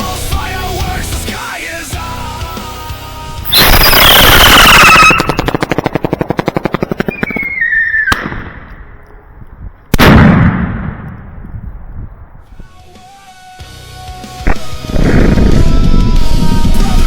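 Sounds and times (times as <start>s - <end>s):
firework whistle falling in pitch: 3.5s - 5.5s, 7.2s - 8.2s
crackling firework pops: 3.5s - 8.9s.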